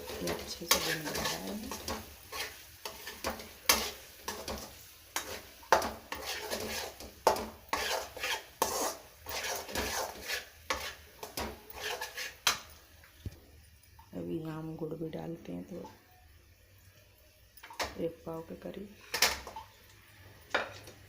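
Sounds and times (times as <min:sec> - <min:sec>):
spoon stirring and scraping paste: 0:00.0 - 0:12.7
paste sizzling in oil: 0:00.0 - 0:21.0.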